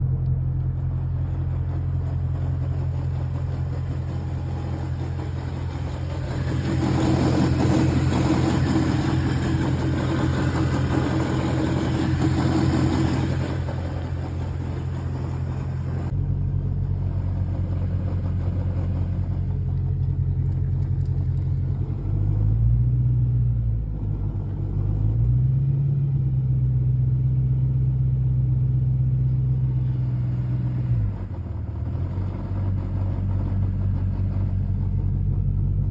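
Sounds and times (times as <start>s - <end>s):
engine revving: 0.0s - 16.2s, 16.8s - 35.9s
car engine idling: 0.0s - 22.0s, 26.4s - 35.9s
odd noise over engine idle: 0.1s - 22.0s.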